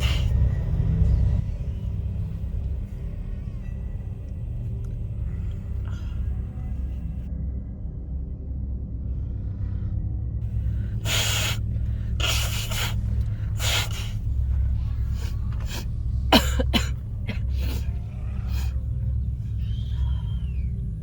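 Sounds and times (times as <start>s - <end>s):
low hum: 0.0s - 21.0s
gasping in-breaths: 10.5s - 16.0s
person sneezing: 11.1s - 11.6s, 12.2s - 13.0s, 16.4s - 16.9s.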